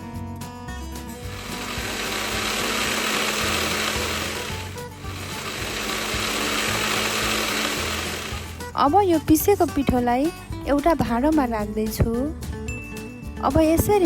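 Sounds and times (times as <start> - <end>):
mixer grinder running: 1.3 - 8.8.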